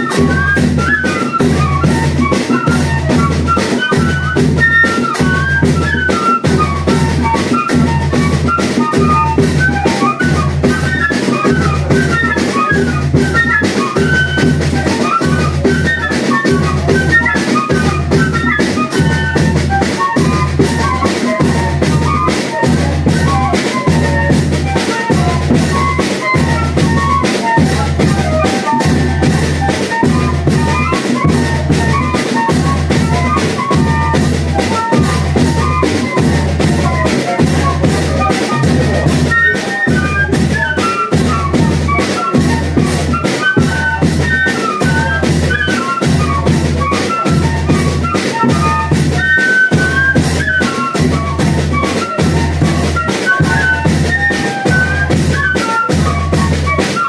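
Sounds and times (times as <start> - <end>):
snare drum: 0.0 - 57.0.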